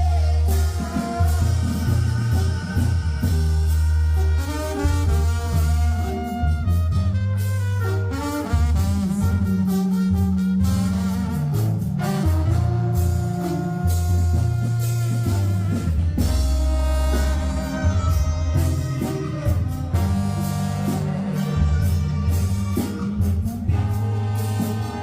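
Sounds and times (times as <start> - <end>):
drum and cymbal strokes: 0.0 - 6.6, 8.3 - 25.0
brass and reed melody: 0.0 - 25.0
tuba bass line: 0.0 - 25.0.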